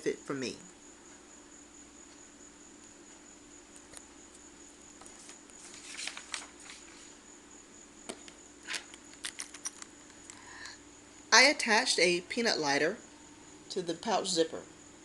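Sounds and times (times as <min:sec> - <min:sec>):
rustling: 0:05.0 - 0:07.2.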